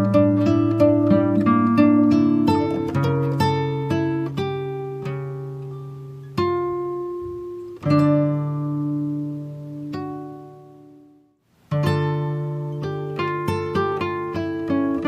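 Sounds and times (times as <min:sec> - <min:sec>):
plucked string notes: 0:00.0 - 0:15.0.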